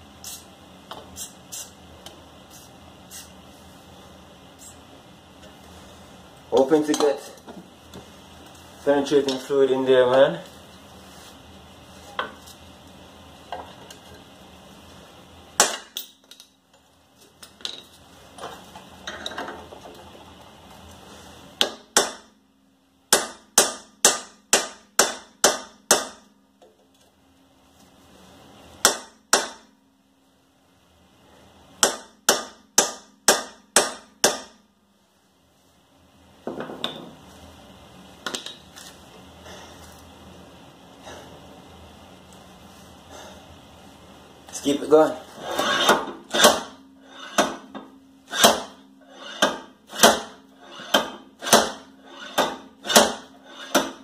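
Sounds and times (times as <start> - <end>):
sledgehammer striking metal hub: 45.5 - 54.0.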